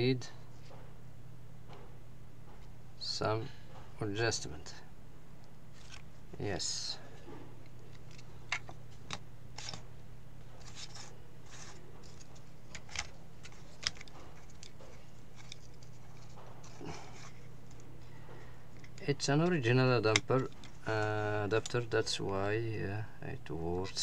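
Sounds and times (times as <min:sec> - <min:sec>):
steady low hum: 0:00.0 - 0:24.0
power adapter cable handled: 0:07.6 - 0:09.8, 0:10.6 - 0:17.9, 0:18.7 - 0:21.8.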